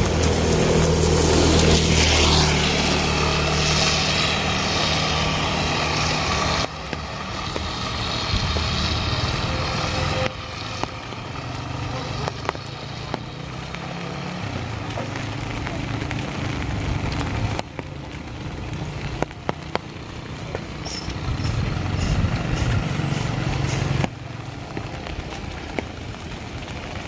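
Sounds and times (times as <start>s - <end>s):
rain hiss on wet road: 0.0s - 27.0s
vehicle engine humming: 0.0s - 27.0s.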